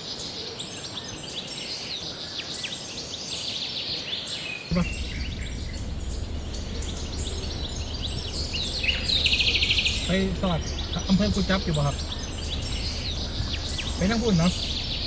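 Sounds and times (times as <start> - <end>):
birds chirping: 4.7 - 15.0
steady low rumble: 4.7 - 15.0.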